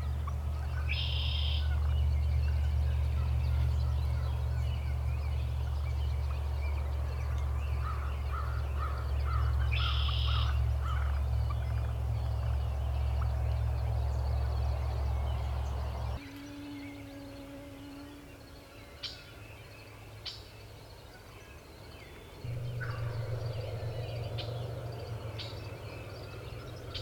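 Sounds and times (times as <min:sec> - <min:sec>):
steady low rumble: 0:00.0 - 0:16.2, 0:22.5 - 0:27.0
wild turkey calling: 0:07.3 - 0:13.4, 0:22.5 - 0:27.0.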